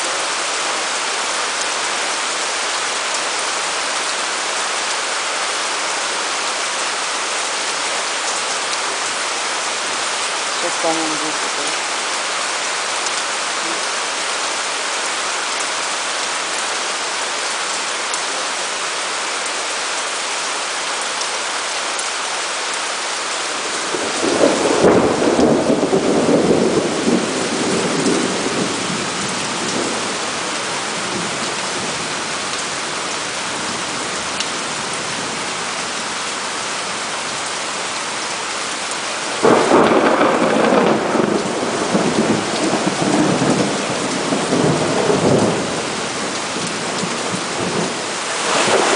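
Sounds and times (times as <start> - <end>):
heavy rain: 0.0 - 48.9
thunder rumbling: 23.7 - 30.0, 39.2 - 45.8, 47.2 - 48.9.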